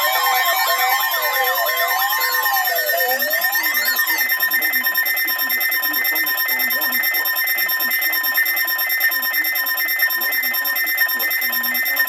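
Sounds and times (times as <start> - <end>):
steady high whine: 0.0 - 4.3
alternating high and low alert beeps: 0.0 - 12.0.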